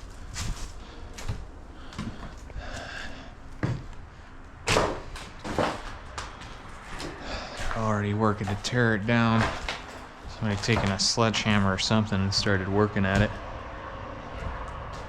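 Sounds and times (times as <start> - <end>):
knocks and thuds: 13.1 - 13.5.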